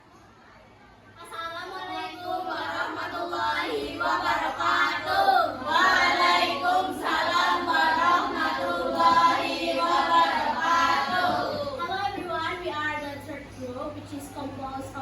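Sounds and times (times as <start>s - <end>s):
women singing together: 1.3s - 11.9s.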